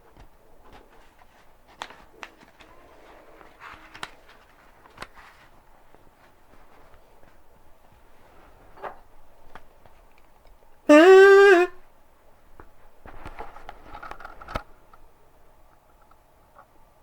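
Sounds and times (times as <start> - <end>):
book pages turning: 0.2 - 6.1.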